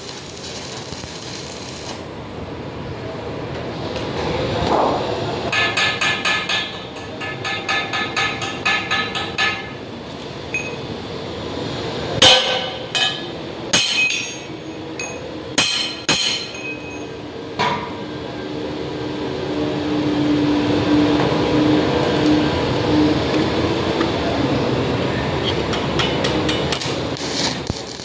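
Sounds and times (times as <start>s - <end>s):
hammer striking metal: 5.5s - 9.8s, 12.2s - 17.9s.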